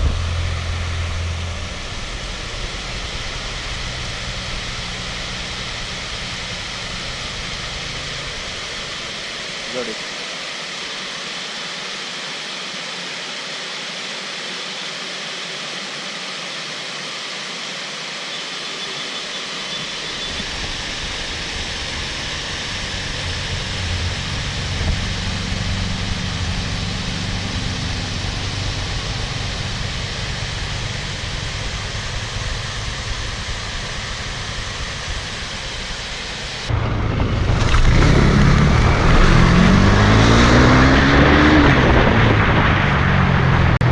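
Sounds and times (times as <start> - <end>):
low rumble: 0.0 - 9.7, 20.3 - 43.9
motor revving: 0.0 - 10.0, 19.5 - 43.9
steady rushing noise: 0.0 - 43.9.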